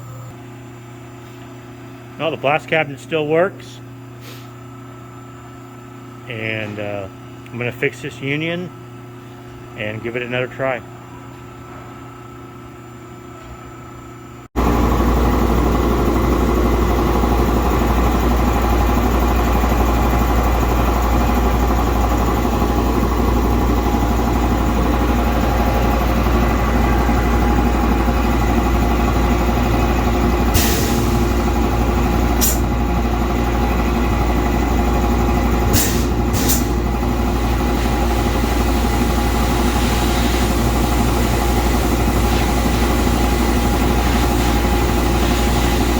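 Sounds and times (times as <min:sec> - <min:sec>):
air compressor running: 0:00.0 - 0:13.0, 0:13.6 - 0:45.9
brief air hisses: 0:04.2 - 0:04.6.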